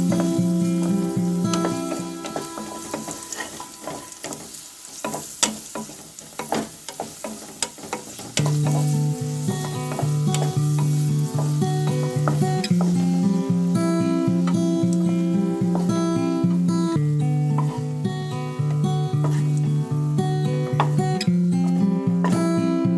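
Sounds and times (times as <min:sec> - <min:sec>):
background music: 0:00.0 - 0:04.2, 0:08.6 - 0:22.9
rice sizzling in a pan: 0:00.0 - 0:22.9
spatula scraping a pan: 0:00.0 - 0:22.9.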